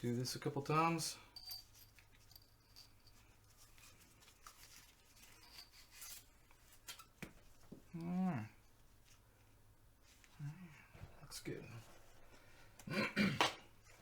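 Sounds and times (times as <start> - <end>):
man's voice murmuring: 8.0 - 8.6.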